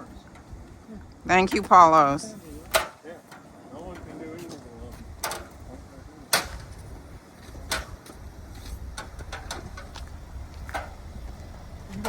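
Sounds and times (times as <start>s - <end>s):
steady low rumble: 3.4s - 12.0s.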